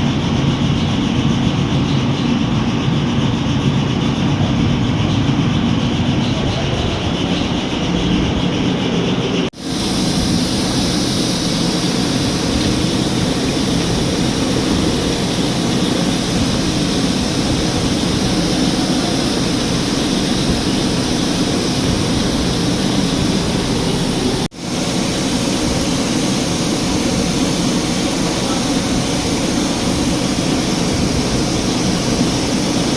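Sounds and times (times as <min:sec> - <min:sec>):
diesel engine running: 0:00.0 - 0:32.9.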